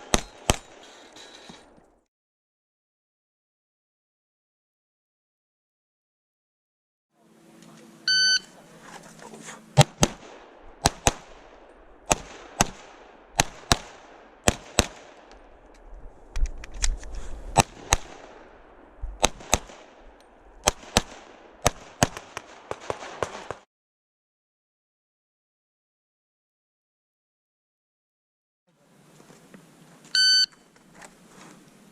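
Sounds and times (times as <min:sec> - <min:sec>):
pistol shots: 0:00.0 - 0:01.0, 0:09.8 - 0:15.4, 0:17.6 - 0:18.6, 0:19.2 - 0:20.0, 0:20.6 - 0:23.6
shot timer beep: 0:08.1 - 0:08.5, 0:30.2 - 0:30.5.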